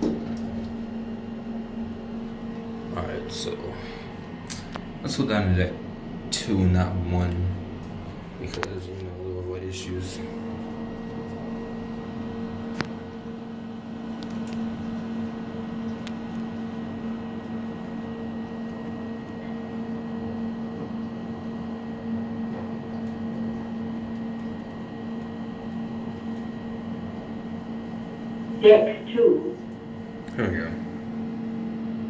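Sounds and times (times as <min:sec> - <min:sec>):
elevator humming: 0:00.0 - 0:12.6, 0:26.9 - 0:30.2.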